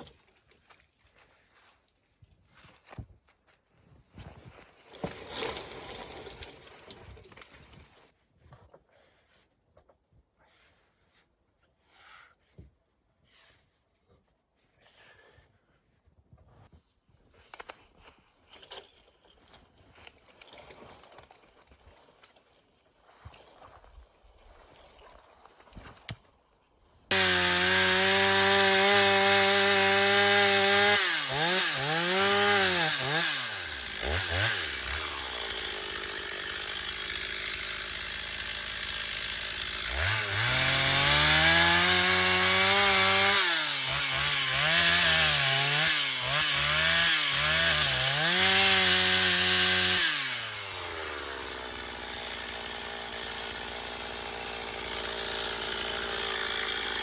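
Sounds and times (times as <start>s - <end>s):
chainsaw engine revving: 27.1s - 57.0s.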